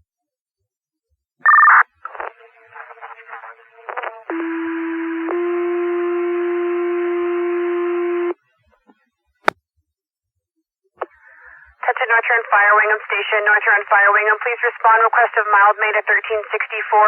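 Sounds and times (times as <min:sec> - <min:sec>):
radio noise: 0:02.1 - 0:04.1, 0:11.0 - 0:17.0.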